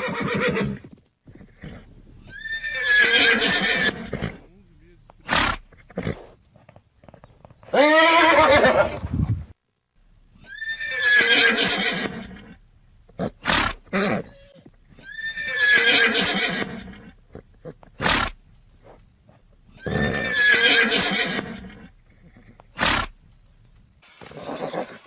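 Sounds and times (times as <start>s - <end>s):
horse neighing: 0.0s - 0.8s, 1.4s - 4.5s, 7.7s - 9.0s, 10.4s - 12.6s, 13.2s - 18.4s, 19.7s - 23.1s, 24.2s - 25.0s.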